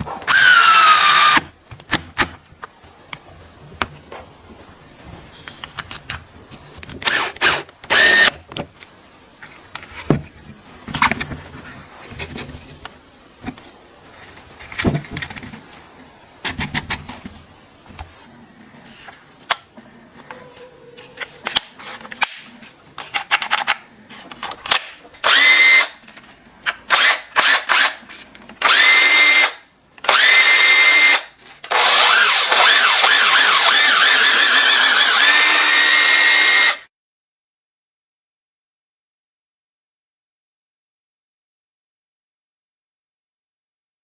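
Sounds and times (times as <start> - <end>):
electric screwdriver motor whine: 0.3 - 1.4, 7.9 - 8.3, 25.2 - 26.0, 26.9 - 28.0, 28.6 - 36.8.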